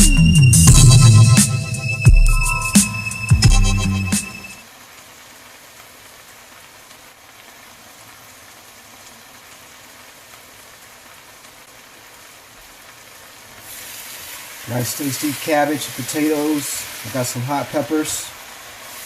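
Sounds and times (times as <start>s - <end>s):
vegetables sizzling in a pan: 4.6s - 19.0s.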